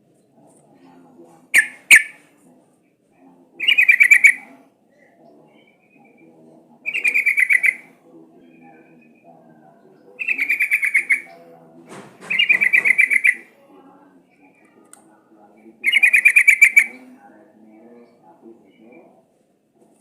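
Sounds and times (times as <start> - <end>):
faint low murmur: 0.0 - 20.0
bird chattering calls: 1.5 - 2.2, 3.6 - 4.5, 6.8 - 7.9, 10.2 - 11.5, 12.2 - 13.5, 15.8 - 17.0.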